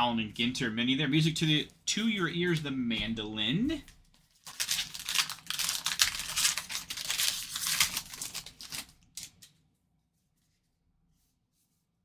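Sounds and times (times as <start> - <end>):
foil wrapper crinkling: 3.8 - 9.5.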